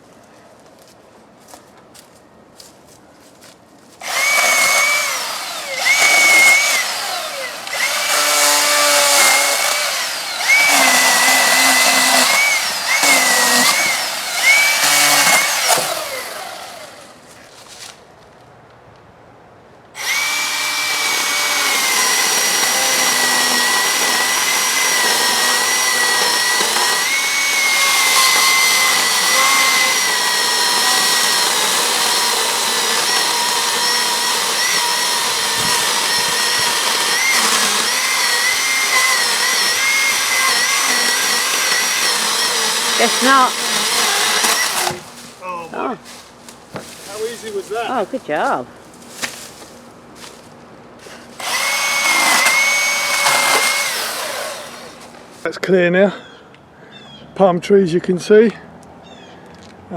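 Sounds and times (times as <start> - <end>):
electric chainsaw cutting wood: 4.0 - 17.2, 20.0 - 45.3, 46.8 - 48.5, 51.0 - 55.3.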